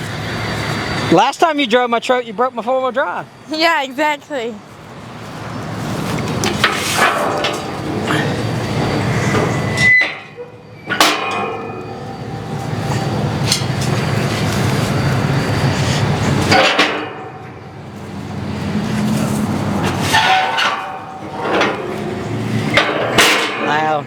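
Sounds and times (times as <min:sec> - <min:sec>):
diesel engine running: 0:00.0 - 0:01.3, 0:03.3 - 0:09.8, 0:10.8 - 0:24.0
sharp metallic clanks: 0:06.4 - 0:18.0, 0:19.2 - 0:24.0.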